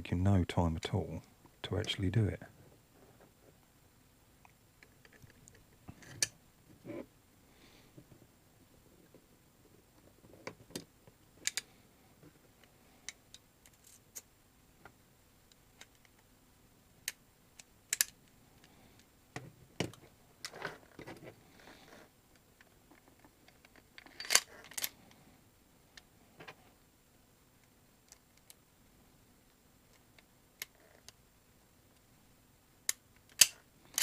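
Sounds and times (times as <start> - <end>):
pistol parts clicking and knocking: 33.3 - 34.0.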